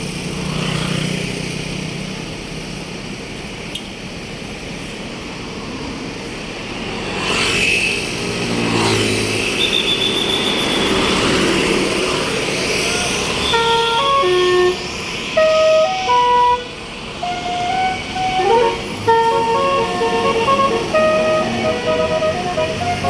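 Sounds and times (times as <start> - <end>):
vehicles driving past: 0.0 - 23.0.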